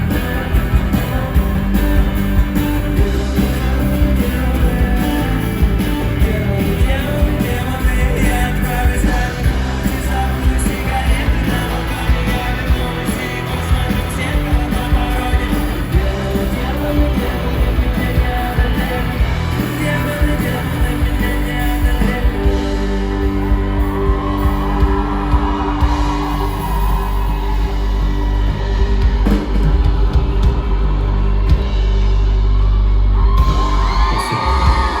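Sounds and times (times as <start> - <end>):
person singing: 0.0 - 27.7
acoustic rock band playing: 0.0 - 35.0
people shouting: 22.8 - 31.6.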